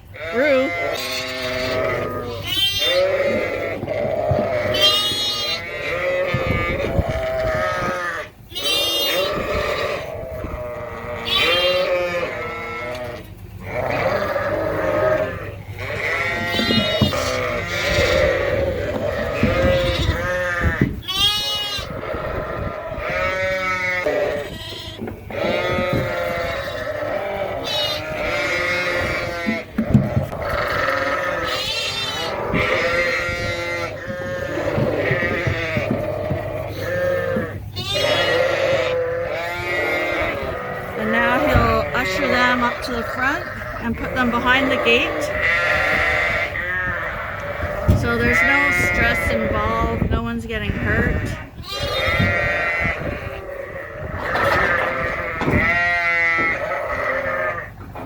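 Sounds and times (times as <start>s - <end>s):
sheep and lambs bleating: 0.0s - 58.0s.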